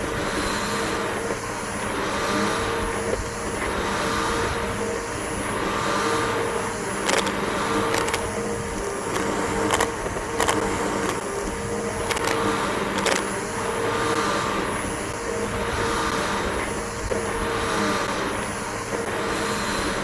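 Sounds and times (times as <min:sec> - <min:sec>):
debris clicking in vacuum: 0:07.0 - 0:13.3.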